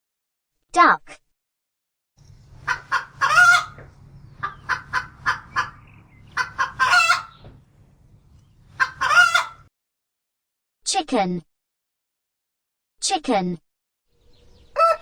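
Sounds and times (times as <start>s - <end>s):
faint low hum: 2.2s - 9.4s
hen clucking and squawking: 2.2s - 9.7s, 14.1s - 15.0s.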